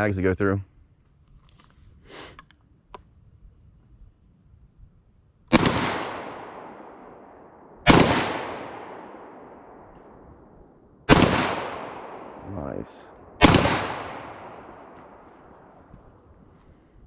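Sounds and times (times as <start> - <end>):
shotgun shots with echo: 5.5 - 10.5, 11.1 - 16.0.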